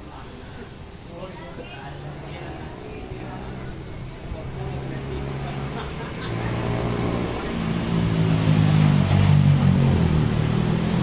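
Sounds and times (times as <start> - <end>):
engine revving: 4.7 - 11.0.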